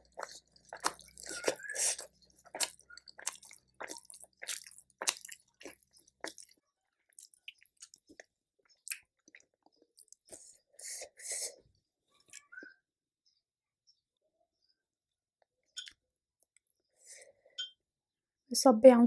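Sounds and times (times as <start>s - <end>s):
person chewing food: 0.0s - 12.7s.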